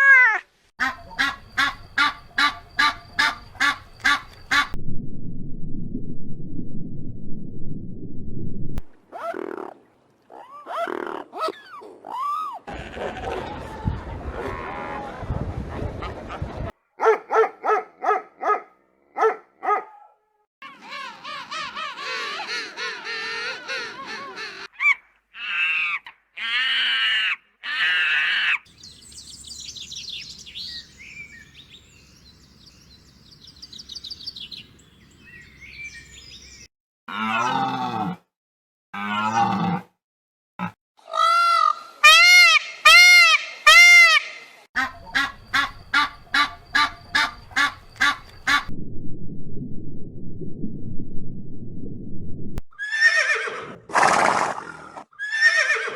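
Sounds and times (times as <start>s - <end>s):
farm animal calls: 0.2s - 4.8s, 41.1s - 48.7s.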